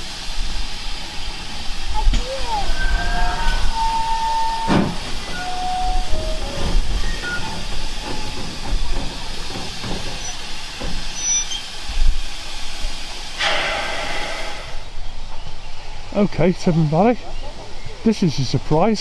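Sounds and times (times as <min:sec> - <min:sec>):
steam hissing: 0:00.0 - 0:17.1
burst of steam: 0:09.2 - 0:15.1.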